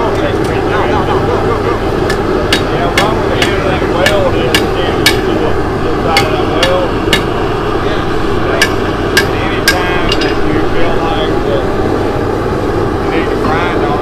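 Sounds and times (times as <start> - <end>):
hammer striking steel on anvil: 2.1 - 5.4, 6.1 - 7.4, 8.6 - 10.5.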